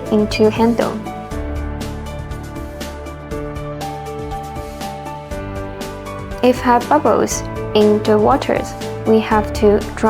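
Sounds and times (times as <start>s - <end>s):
music with held notes and light beat: 0.0s - 10.0s.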